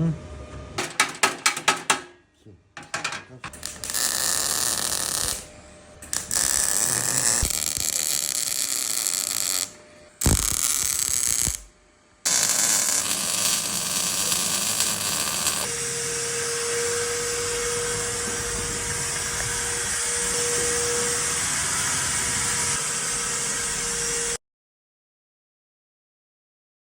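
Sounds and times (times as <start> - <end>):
welding crackling hiss: 3.5 - 11.7, 12.3 - 15.8.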